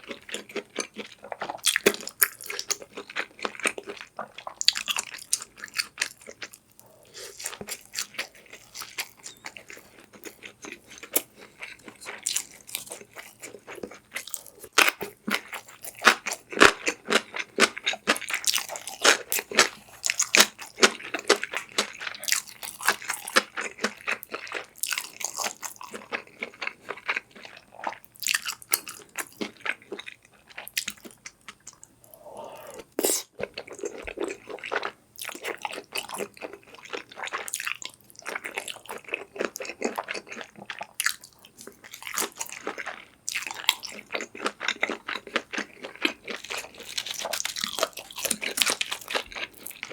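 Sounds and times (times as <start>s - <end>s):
person chewing crunchy food: 0.0s - 49.9s.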